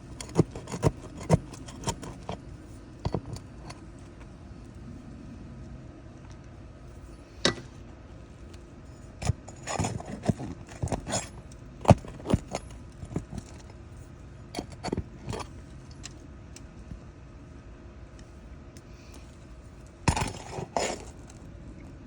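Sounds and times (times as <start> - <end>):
metal tool clinking and scraping: 0.1 - 2.4, 8.9 - 13.8, 14.6 - 16.2, 20.1 - 21.4.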